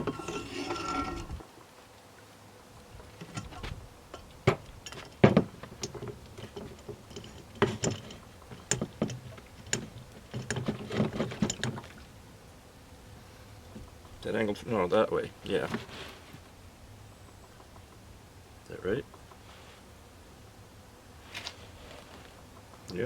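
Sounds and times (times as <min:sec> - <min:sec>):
metal clanks and clicks: 0:03.2 - 0:11.8.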